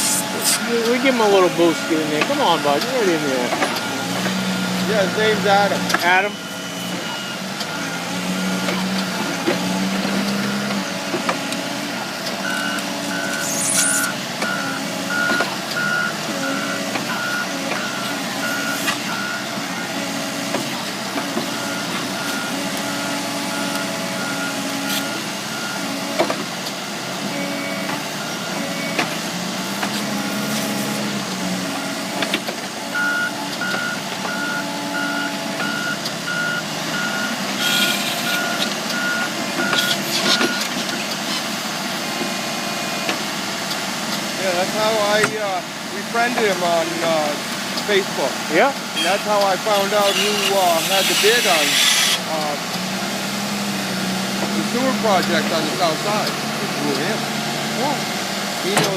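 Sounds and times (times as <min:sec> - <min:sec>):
reversing alarm beeping: 0:00.0 - 0:10.8, 0:12.0 - 0:20.2, 0:21.4 - 0:26.1, 0:32.9 - 0:40.7
diesel engine running: 0:00.0 - 0:58.9.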